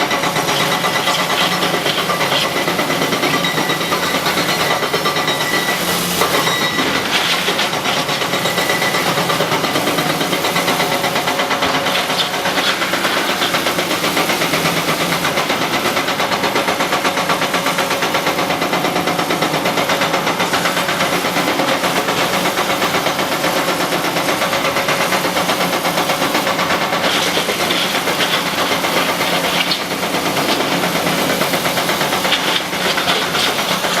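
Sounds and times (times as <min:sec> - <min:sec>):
rock clattering: 0:00.0 - 0:10.1
excavator diesel engine running: 0:00.0 - 0:34.0.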